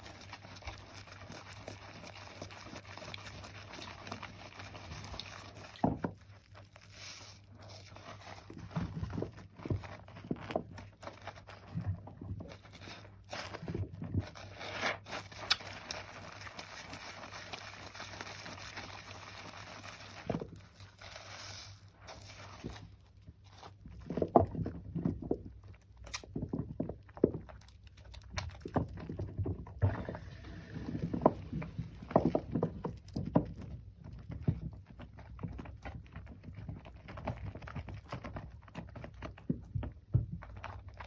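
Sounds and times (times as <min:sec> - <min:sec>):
wet soap squishing by hand: 0:00.0 - 0:41.0.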